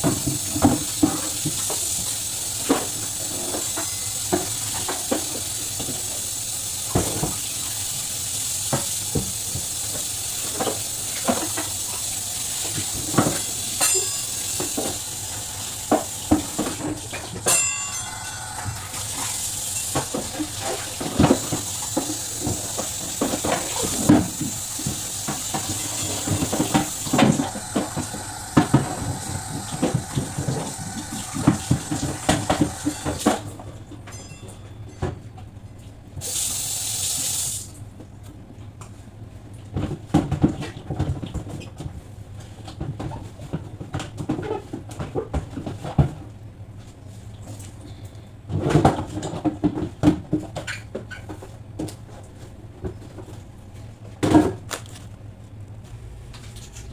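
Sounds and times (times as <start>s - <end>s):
tap water running into sink: 0.0s - 33.4s, 36.2s - 37.7s.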